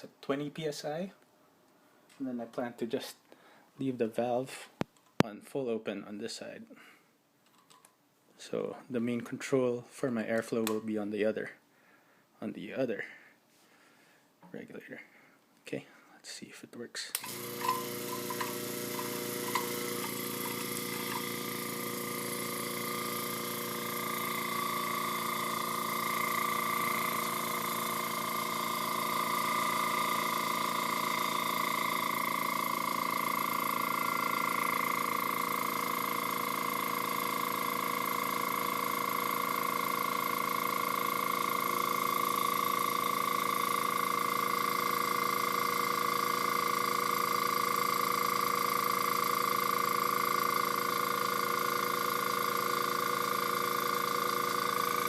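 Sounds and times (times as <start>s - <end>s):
compressor starting clicks: 17.1s - 55.0s
compressor motor hum and whine: 17.2s - 55.0s.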